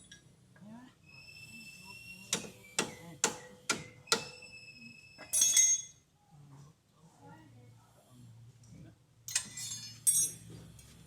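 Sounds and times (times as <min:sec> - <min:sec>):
clinking metal clatter: 0:05.3 - 0:06.0, 0:09.3 - 0:10.5.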